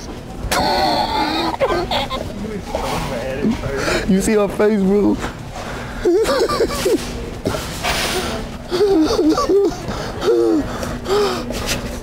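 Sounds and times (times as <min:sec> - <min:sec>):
person laughing breathlessly: 0:05.9 - 0:07.0, 0:08.7 - 0:11.4.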